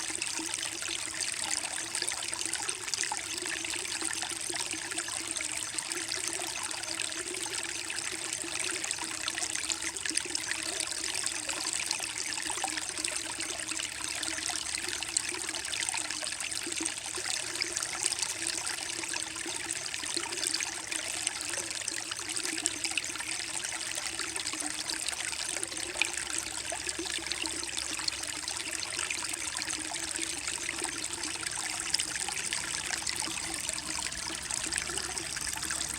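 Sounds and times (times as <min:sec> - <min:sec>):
creek babbling over rocks: 0:17.4 - 0:35.9.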